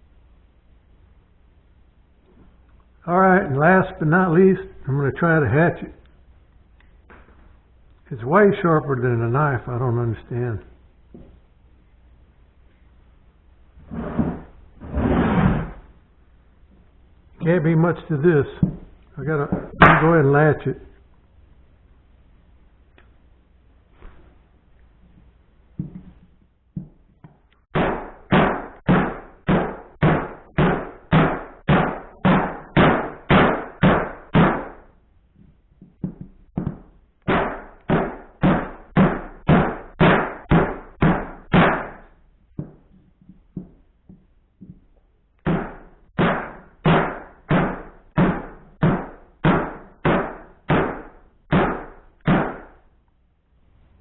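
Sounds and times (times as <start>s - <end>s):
hatchet chopping wood: 27.7s - 34.8s, 36.0s - 42.0s, 45.4s - 52.7s.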